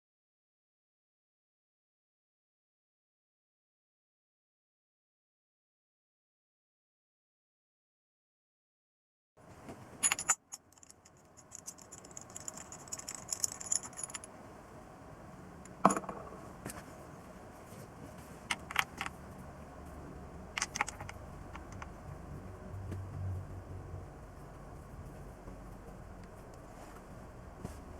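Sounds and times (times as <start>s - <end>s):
small metal objects clinking: 10.0s - 14.3s.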